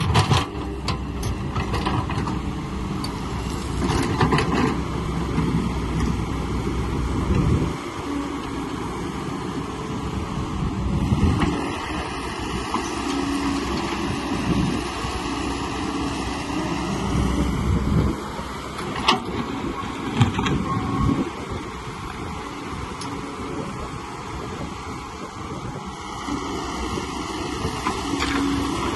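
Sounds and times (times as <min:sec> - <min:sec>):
excavator engine running: 0:00.0 - 0:28.9.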